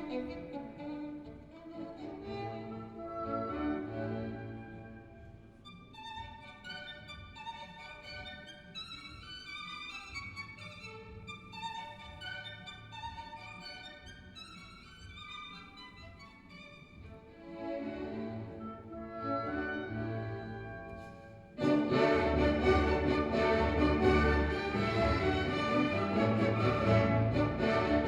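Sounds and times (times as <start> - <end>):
violin melody: 0.0 - 28.0
low string passage: 21.6 - 28.0.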